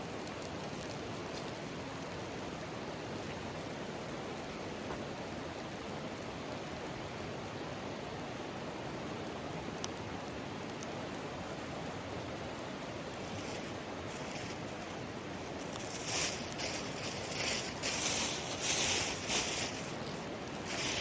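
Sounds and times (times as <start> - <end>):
mountain stream flowing: 0.0 - 21.0
high hissing bursts: 13.2 - 21.0.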